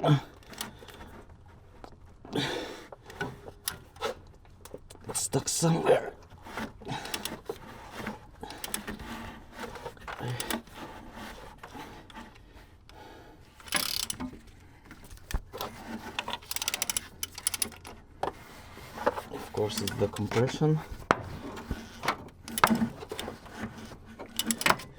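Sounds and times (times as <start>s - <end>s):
hand tools clicking and clunking: 0.0s - 24.9s
quick ratchet clicks: 13.6s - 14.3s, 16.4s - 17.9s, 24.4s - 24.9s.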